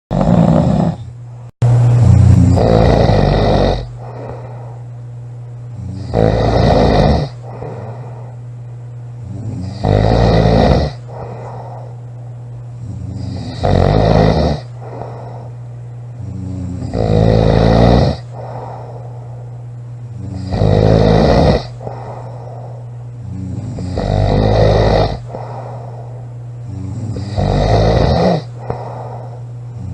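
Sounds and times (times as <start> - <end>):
woman snoring loudly: 0.1 - 1.1, 2.0 - 4.6, 5.8 - 8.3, 9.2 - 11.9, 12.8 - 15.5, 16.2 - 19.0, 20.2 - 22.4, 23.2 - 25.9, 26.7 - 29.9
steady low hum: 0.1 - 29.9.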